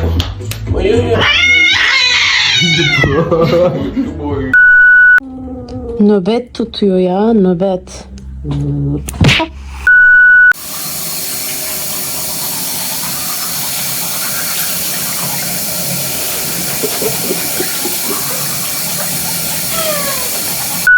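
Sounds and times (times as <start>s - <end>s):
tap water running into bathtub: 10.6s - 20.9s.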